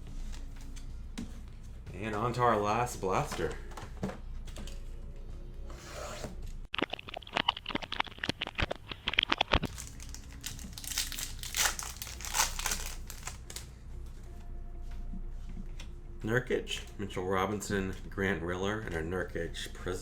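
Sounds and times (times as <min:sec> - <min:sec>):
plastic wrapping tearing and crinkling: 0:07.2 - 0:13.7.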